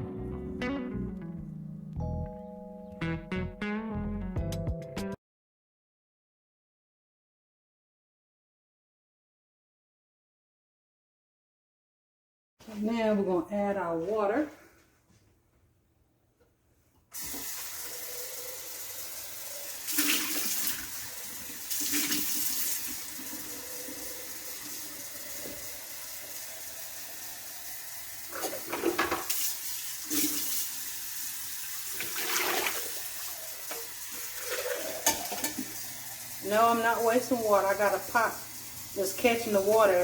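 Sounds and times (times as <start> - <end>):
water pouring into container: 17.2 - 39.2.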